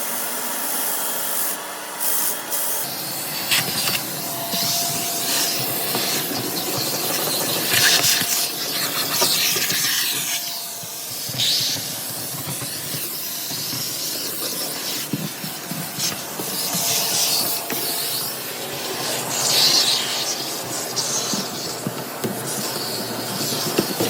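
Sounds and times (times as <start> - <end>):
air rushing through vent duct: 2.8 - 24.0.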